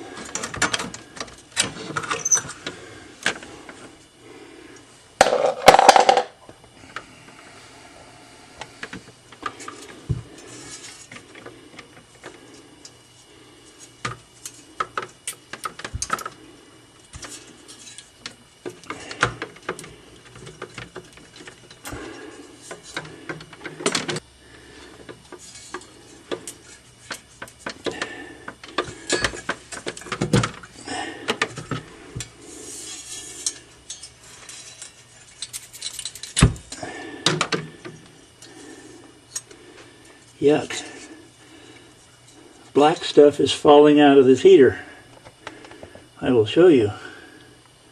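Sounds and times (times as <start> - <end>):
metallic clinks and scraping: 17.2 - 18.2, 25.2 - 27.8, 32.2 - 36.4.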